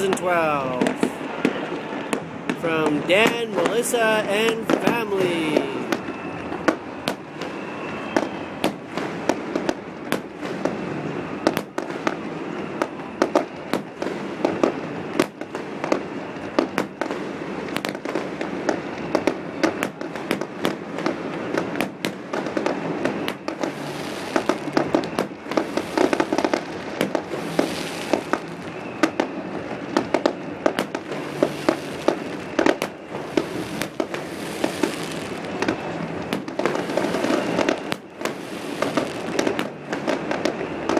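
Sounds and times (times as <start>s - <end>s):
fireworks bangs and pops: 0.0s - 40.9s
fireworks hissing: 27.0s - 28.6s, 30.8s - 35.6s, 36.2s - 39.8s.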